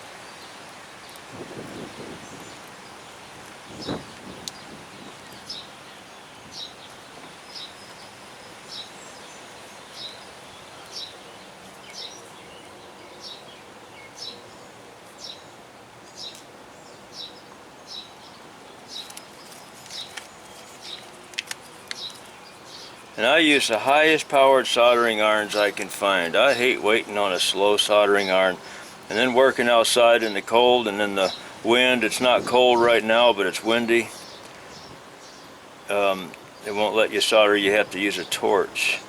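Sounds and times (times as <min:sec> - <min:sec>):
outdoor background noise: 0:00.0 - 0:39.0
bird chirping: 0:01.8 - 0:39.0.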